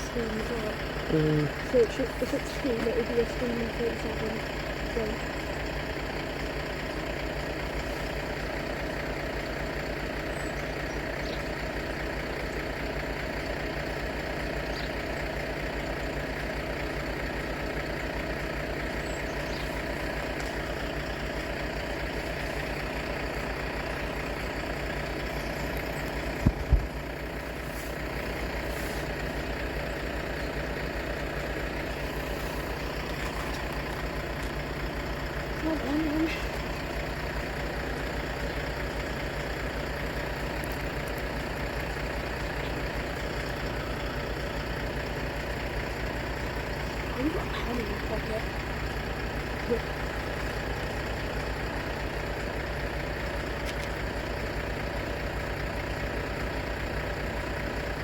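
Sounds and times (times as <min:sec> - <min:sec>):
heavy engine idling: 0:00.0 - 0:58.0.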